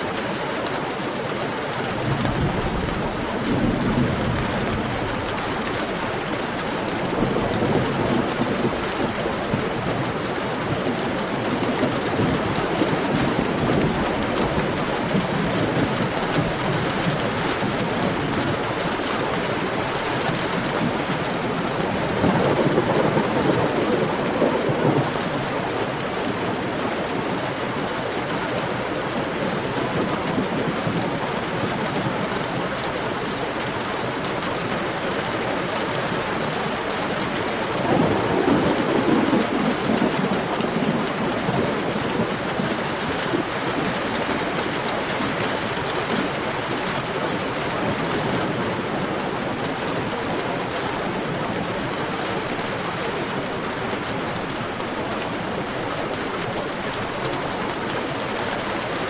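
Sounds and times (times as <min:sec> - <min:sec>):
heavy rain falling: 0:00.0 - 0:59.0
low rolling thunder: 0:01.9 - 0:28.3, 0:35.6 - 0:45.0.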